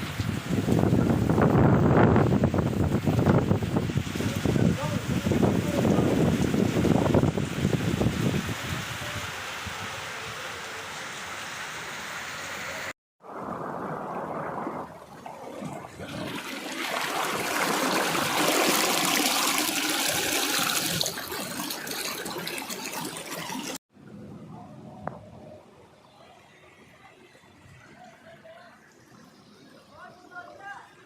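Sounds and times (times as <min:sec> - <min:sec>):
floodwater rushing: 0:00.0 - 0:23.8.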